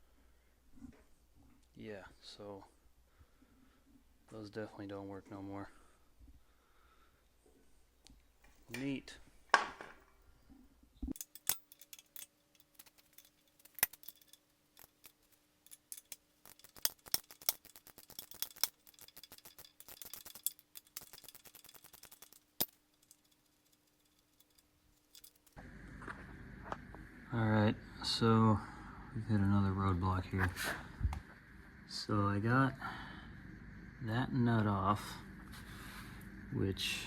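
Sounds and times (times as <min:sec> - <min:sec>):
metal tool clinks: 0:11.1 - 0:25.6
ratchet wrench clicking: 0:11.1 - 0:25.6.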